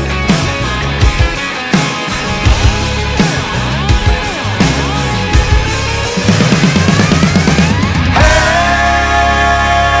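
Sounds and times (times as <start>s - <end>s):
country rock guitar and drums: 0.0s - 10.0s
fast drum run: 1.2s - 8.7s.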